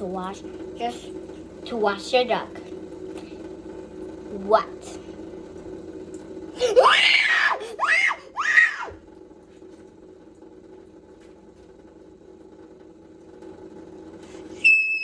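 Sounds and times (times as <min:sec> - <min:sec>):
low background hum: 0:00.0 - 0:15.0
child squealing: 0:06.6 - 0:09.0.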